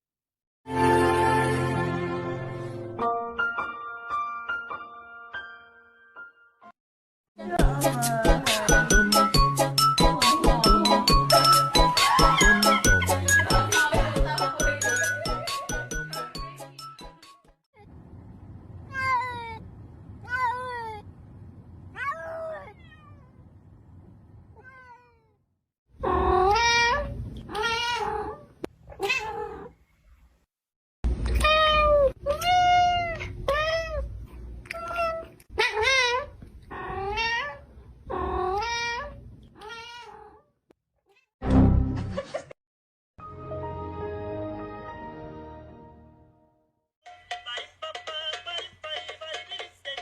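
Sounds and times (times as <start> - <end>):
cats meowing: 22.0 - 23.4, 26.0 - 29.7, 31.4 - 40.5.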